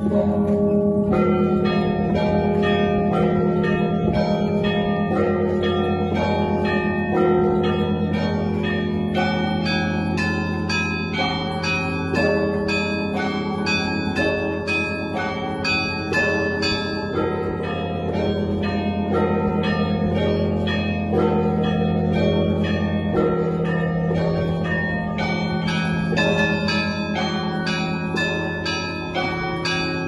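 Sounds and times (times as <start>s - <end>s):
low hum of large bells: 0.0s - 30.0s
small church bells ringing: 0.0s - 30.0s.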